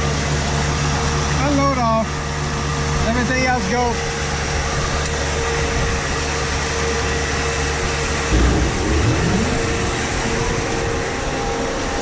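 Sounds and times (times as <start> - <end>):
machinery humming: 0.0 - 12.0
motor speeding up: 8.3 - 11.6.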